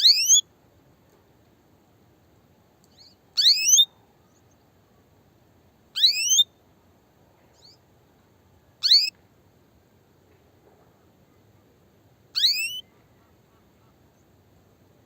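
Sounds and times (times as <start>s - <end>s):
canary chirping: 0.0s - 0.4s, 2.9s - 3.8s, 6.0s - 6.4s, 8.8s - 9.1s, 12.4s - 12.8s
low steady hiss: 0.0s - 15.0s.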